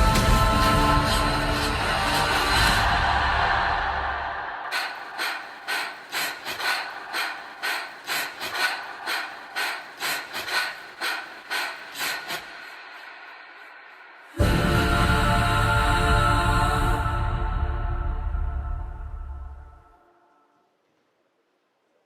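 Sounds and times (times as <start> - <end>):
rapid panting breaths: 0.0 - 14.5.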